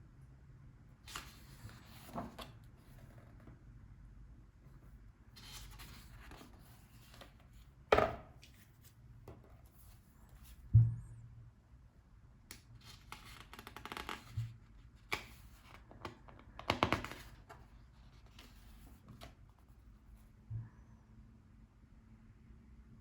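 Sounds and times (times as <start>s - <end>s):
paper pages rustling: 1.1s - 3.4s, 5.4s - 7.7s, 16.9s - 19.6s.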